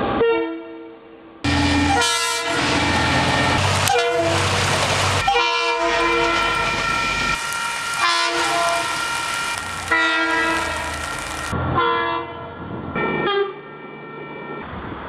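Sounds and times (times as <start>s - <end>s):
train rushing: 1.5s - 11.8s
locomotive air horn blasts: 1.5s - 12.4s.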